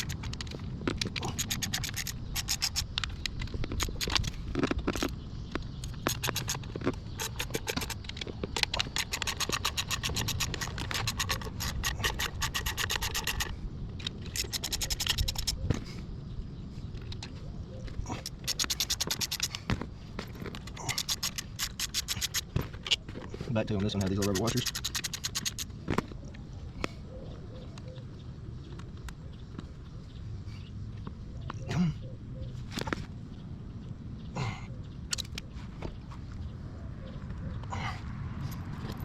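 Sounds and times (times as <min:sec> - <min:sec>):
wrench clicking and scraping: 0:00.0 - 0:05.2, 0:05.8 - 0:15.7, 0:18.1 - 0:19.7, 0:20.4 - 0:23.0, 0:23.8 - 0:25.8, 0:35.1 - 0:35.5.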